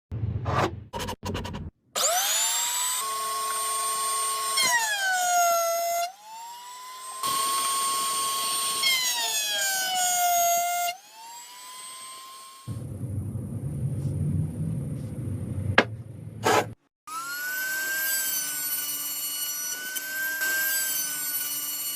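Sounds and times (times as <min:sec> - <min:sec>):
electric power tool whining: 0:02.0 - 0:12.7.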